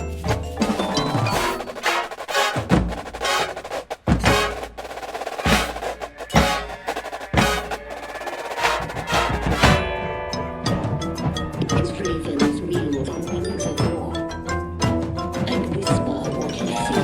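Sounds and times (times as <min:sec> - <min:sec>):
snare drum rolls: 0:00.1 - 0:09.8
sustained brass tones: 0:01.3 - 0:09.9.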